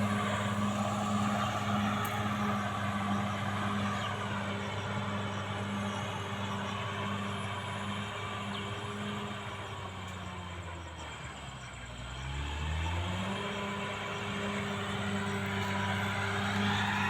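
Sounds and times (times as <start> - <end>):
bulldozer diesel engine running: 0.0 - 17.0.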